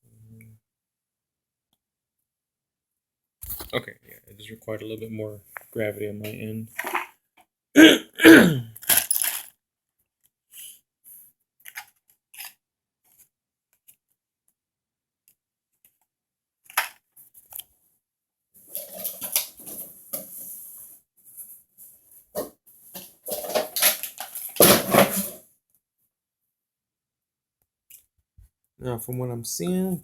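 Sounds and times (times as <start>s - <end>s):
rustling: 18.7s - 20.7s.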